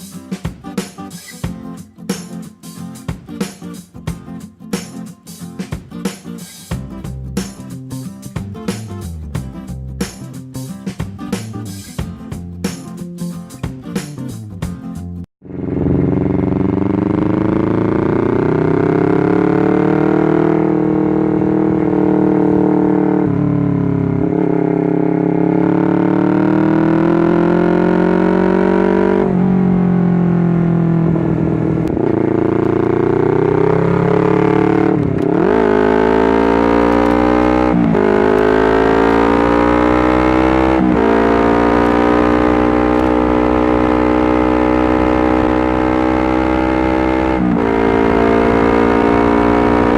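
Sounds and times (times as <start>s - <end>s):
motorcycle engine running: 15.4s - 49.9s.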